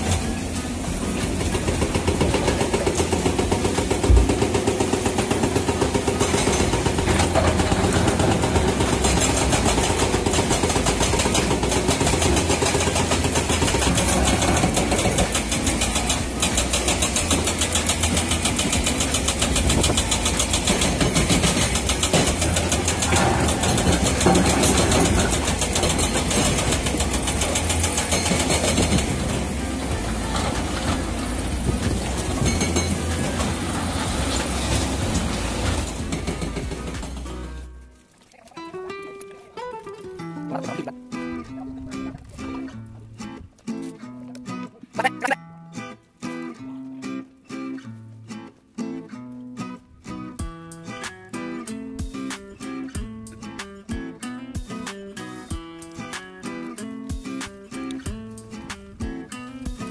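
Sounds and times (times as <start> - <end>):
heavy machinery pulsing: 0.0 - 37.6.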